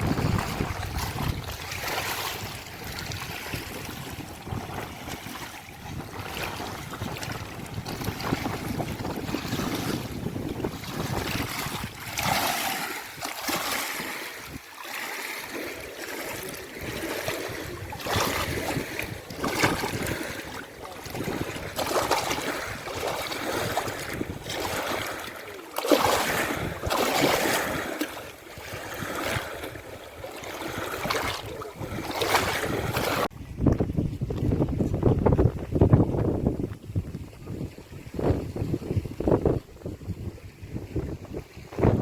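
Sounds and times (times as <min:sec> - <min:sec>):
wind buffeting microphone: 0:00.0 - 0:14.6, 0:16.5 - 0:25.4, 0:26.0 - 0:42.0
lake water splashing: 0:00.0 - 0:42.0.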